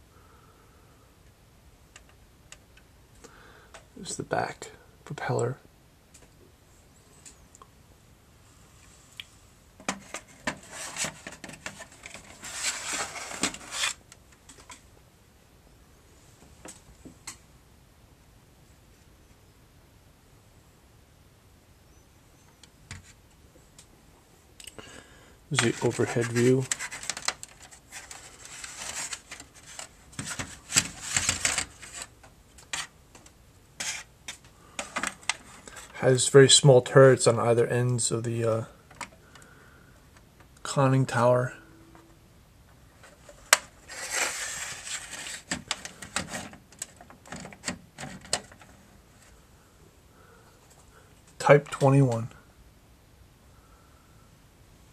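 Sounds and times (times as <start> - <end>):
rustling: 8.5 - 15.0, 24.8 - 36.3, 41.2 - 52.5
rubbing scraping sounds: 10.0 - 14.0, 25.6 - 32.1, 33.8 - 34.1, 43.0 - 46.5.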